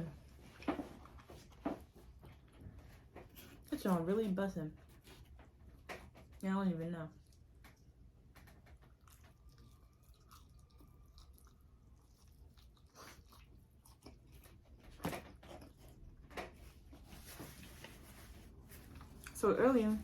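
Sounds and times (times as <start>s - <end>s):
chewing and mouth sounds: 7.1s - 16.3s.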